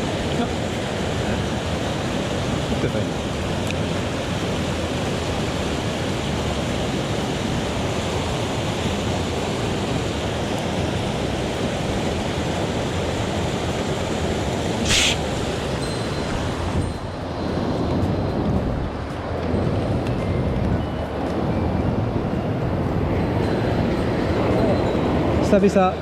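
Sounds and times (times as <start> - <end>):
mountain stream rushing: 0.0 - 26.0
sharp hiss: 14.8 - 15.9.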